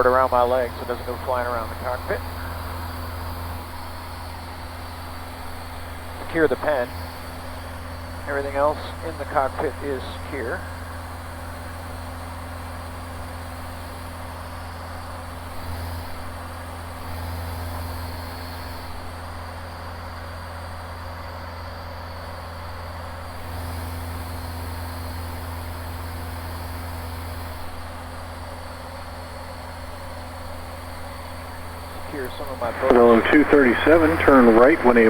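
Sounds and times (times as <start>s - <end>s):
aircraft engine droning: 0.0s - 12.8s, 31.0s - 35.0s.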